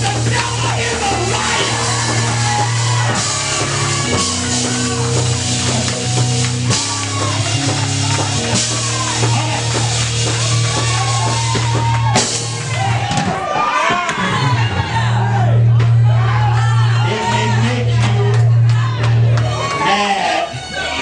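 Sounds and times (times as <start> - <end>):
people singing: 0.0 - 11.2, 16.4 - 19.0
guitar: 0.0 - 13.5
drums beat: 0.0 - 14.7
bass guitar: 0.0 - 19.9.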